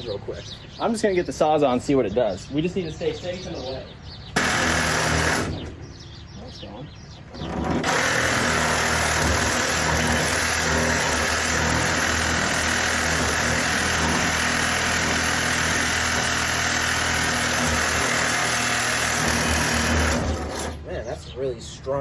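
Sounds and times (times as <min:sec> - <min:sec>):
reciprocating saw cutting metal: 0:04.4 - 0:05.8, 0:07.4 - 0:20.8.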